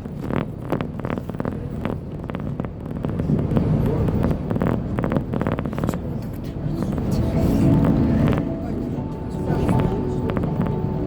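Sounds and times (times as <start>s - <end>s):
boat diesel engines rumbling: 0.0s - 11.0s
indistinct voices: 5.7s - 11.0s.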